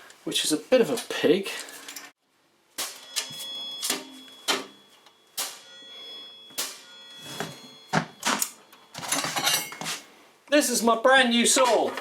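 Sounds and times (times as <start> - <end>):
sharp metallic knocks with ringing: 2.8 - 9.8.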